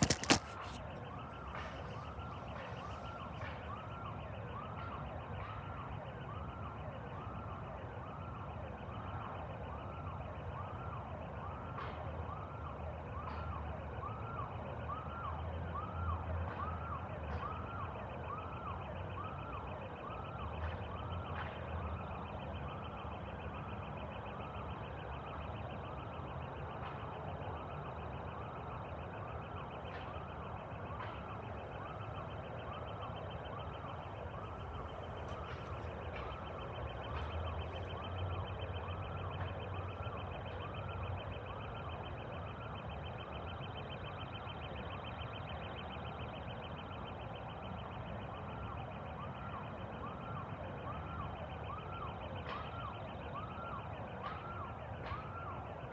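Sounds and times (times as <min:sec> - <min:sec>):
scattered clicks: 0:00.0 - 0:00.8
siren-like sweeping tone: 0:00.0 - 0:07.5, 0:13.4 - 0:55.9.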